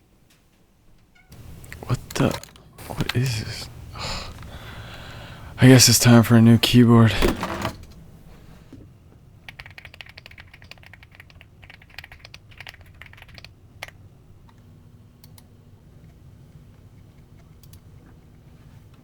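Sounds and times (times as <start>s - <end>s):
keyboard typing: 9.5s - 14.0s.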